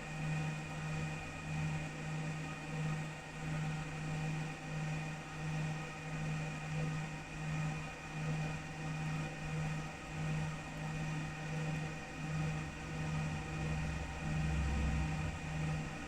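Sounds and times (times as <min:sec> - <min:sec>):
pulsing machine hum: 0:10.5 - 0:16.0.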